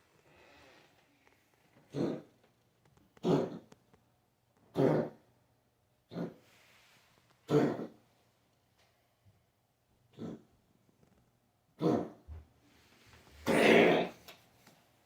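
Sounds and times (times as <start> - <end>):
pet coughing: 7.5 - 7.9, 13.4 - 14.2.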